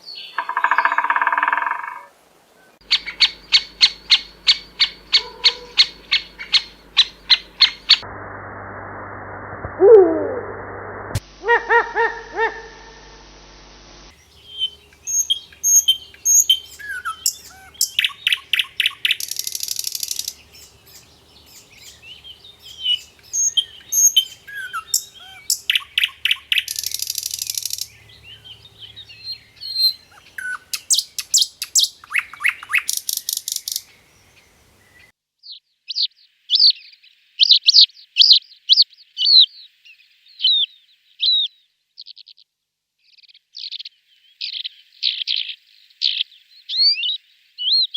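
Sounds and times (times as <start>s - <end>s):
songbirds chirping and trilling: 0.0s - 8.0s, 14.1s - 42.3s
bird falling chirps: 2.8s - 8.0s, 14.2s - 35.0s.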